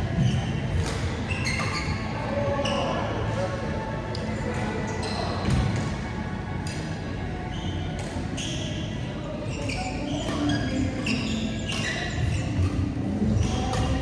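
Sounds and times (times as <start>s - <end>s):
shoe squeaks: 0.2s - 3.1s, 4.8s - 5.6s, 7.5s - 13.9s.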